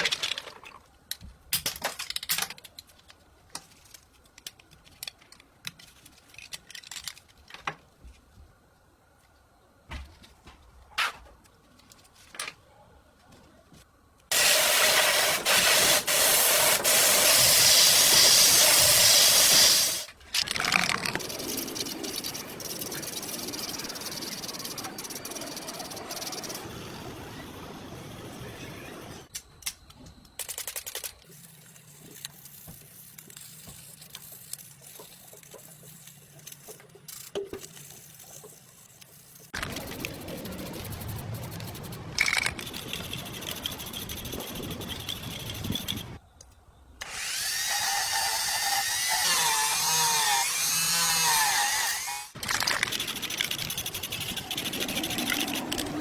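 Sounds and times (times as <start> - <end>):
faint handling sounds: 2.2 - 14.3
pressurised air jet hissing: 14.3 - 20.1.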